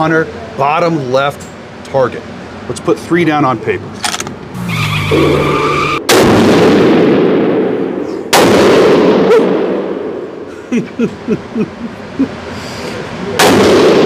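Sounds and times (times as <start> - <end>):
rifle shots with echo: 6.1 - 10.1, 13.4 - 14.0.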